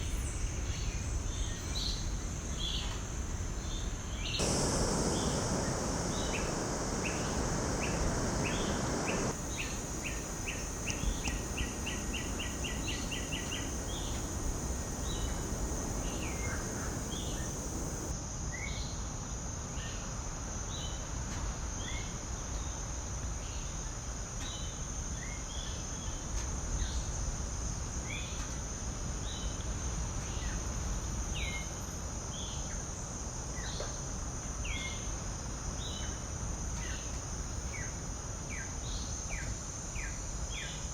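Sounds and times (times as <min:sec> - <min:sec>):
low background noise: 0:00.0 - 0:18.3
insects buzzing high: 0:04.2 - 0:18.2
birds calling: 0:04.4 - 0:09.4, 0:11.0 - 0:18.1.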